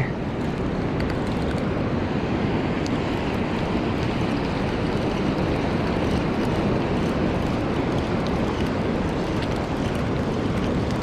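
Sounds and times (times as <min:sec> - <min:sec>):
ocean surf on beach: 0:00.0 - 0:11.0
wind rumbling on microphone: 0:00.0 - 0:11.0.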